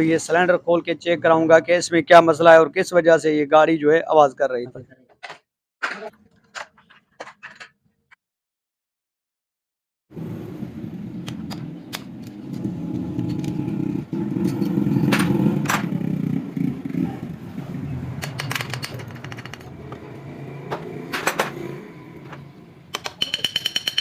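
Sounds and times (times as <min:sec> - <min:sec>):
tools clinking on bolts: 0:22.9 - 0:24.0.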